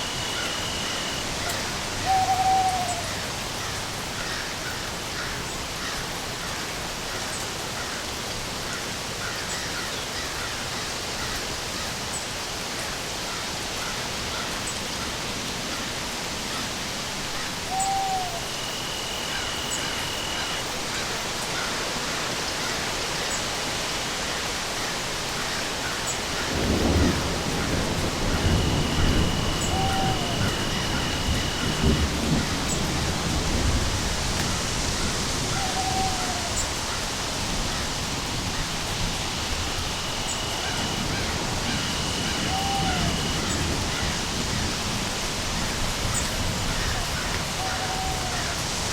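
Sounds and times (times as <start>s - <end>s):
steady rain falling: 0.0s - 48.9s
owl hoots: 0.4s - 3.3s, 17.4s - 21.7s, 28.3s - 31.9s, 35.0s - 37.0s, 40.5s - 44.2s, 46.7s - 48.6s
rolling thunder rumble: 26.4s - 47.6s.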